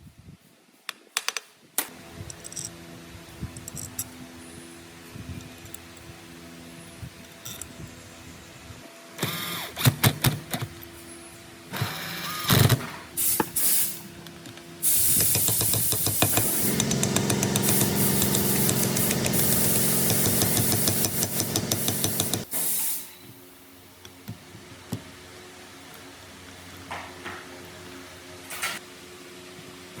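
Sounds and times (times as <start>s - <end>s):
power tool running roughly: 16.3s - 22.5s.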